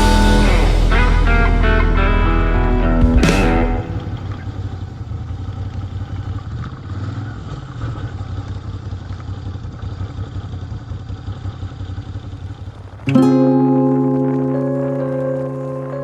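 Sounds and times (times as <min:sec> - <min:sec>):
background music: 0:00.0 - 0:04.4, 0:13.1 - 0:16.0.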